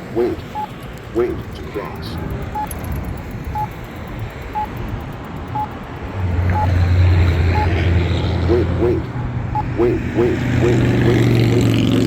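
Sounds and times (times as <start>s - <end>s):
vehicle engine rumbling: 0.0s - 12.0s
pedestrian signal short beeps: 2.5s - 2.8s, 5.5s - 5.8s, 6.5s - 6.9s, 7.5s - 7.8s, 8.6s - 9.8s.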